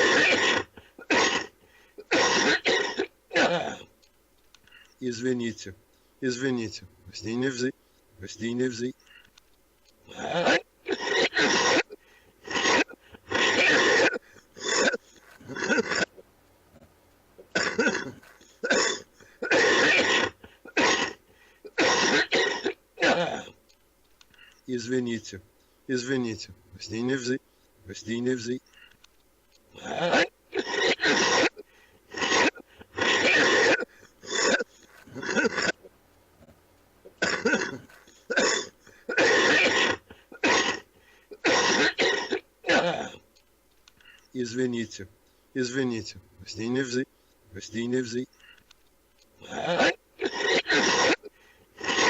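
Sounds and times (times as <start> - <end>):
man coughing harshly: 0.0 - 3.9, 10.1 - 16.1, 17.5 - 23.6, 29.8 - 35.8, 37.2 - 43.2, 49.4 - 52.0.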